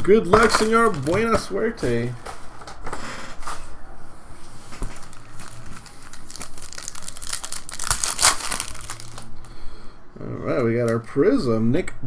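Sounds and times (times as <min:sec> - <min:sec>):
plastic wrapping torn and crinkled: 0:00.4 - 0:02.1, 0:04.7 - 0:09.5.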